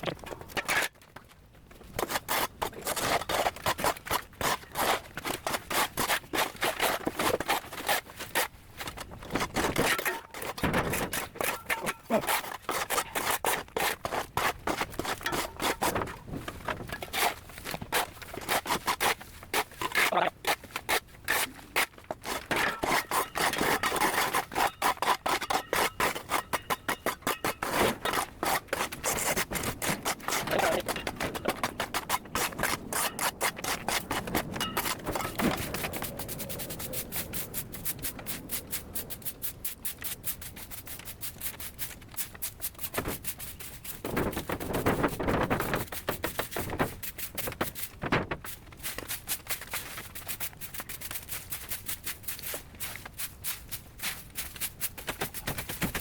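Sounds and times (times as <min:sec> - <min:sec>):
hand scraping strokes: 0:09.5 - 0:56.0.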